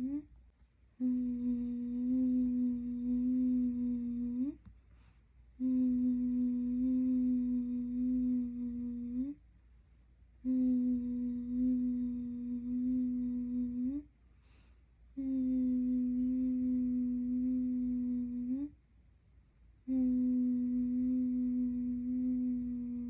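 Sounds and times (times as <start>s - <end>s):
person humming low note: 0.0s - 0.3s, 1.0s - 4.6s, 5.6s - 9.4s, 10.4s - 14.1s, 15.2s - 18.8s, 19.9s - 23.0s.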